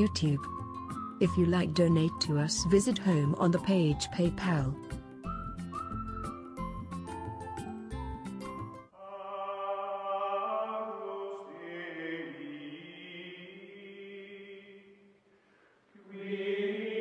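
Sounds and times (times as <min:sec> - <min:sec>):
chant-like voices in sustained chords: 0:09.0 - 0:15.1, 0:16.0 - 0:17.0.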